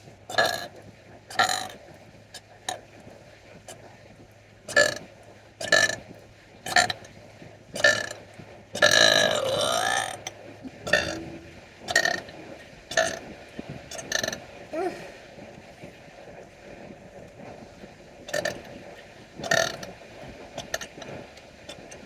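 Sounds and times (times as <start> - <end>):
person burping: 10.7 - 11.6.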